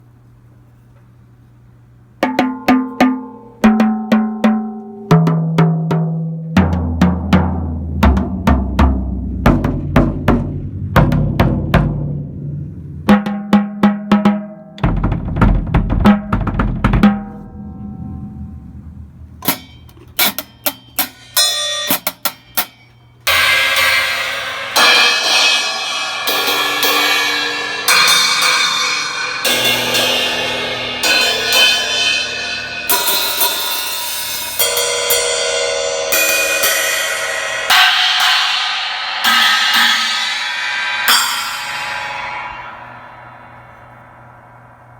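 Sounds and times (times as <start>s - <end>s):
tom drum hits: 5.2s - 22.5s
bass drum strokes: 6.5s - 20.1s, 38.4s - 44.9s
cymbal and hi-hat strikes: 17.2s - 44.9s
ringing cymbal crashes: 17.4s - 44.9s.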